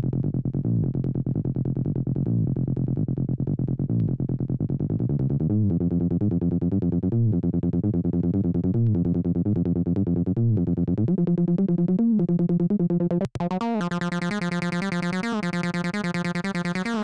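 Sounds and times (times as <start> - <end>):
acid synthesizer music: 10.4 - 17.0.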